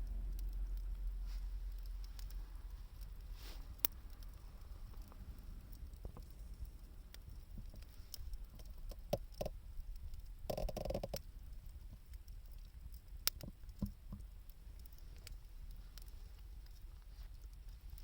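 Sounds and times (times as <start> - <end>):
low rumble: 0.0 - 8.5
wood fire crackling: 0.0 - 18.0.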